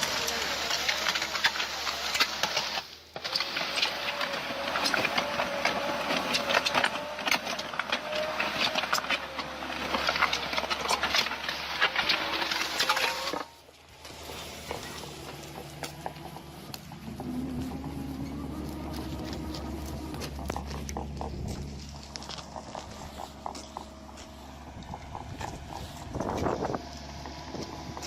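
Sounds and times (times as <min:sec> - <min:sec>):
machinery whine: 0:03.3 - 0:28.0
quiet machinery hum: 0:09.2 - 0:28.0
machinery clattering and ticking: 0:14.7 - 0:28.0.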